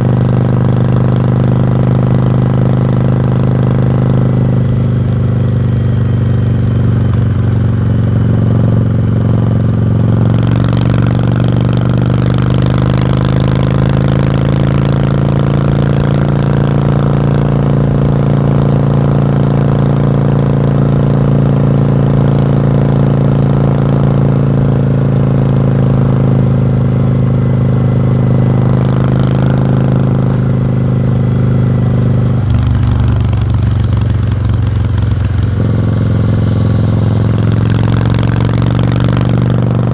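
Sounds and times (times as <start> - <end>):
motorcycle exhaust running steadily: 0.0 - 39.9
broad rush of sound: 34.1 - 39.9.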